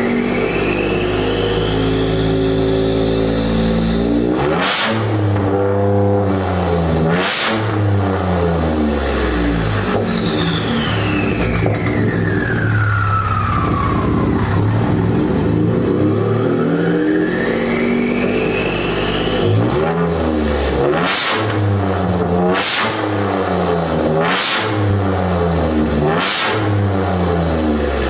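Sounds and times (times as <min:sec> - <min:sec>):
turbo whistle: 0:00.0 - 0:04.3, 0:09.9 - 0:14.9, 0:16.0 - 0:20.0
engine revving: 0:00.0 - 0:28.0.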